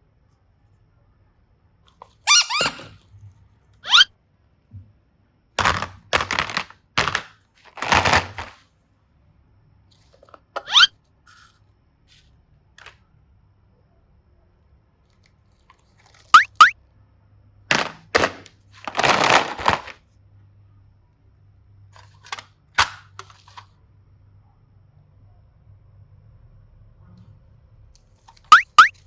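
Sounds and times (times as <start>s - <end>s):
short rising squeaks: 2.3s - 2.9s, 3.8s - 4.1s, 10.7s - 10.9s, 16.4s - 16.7s, 28.5s - 29.0s.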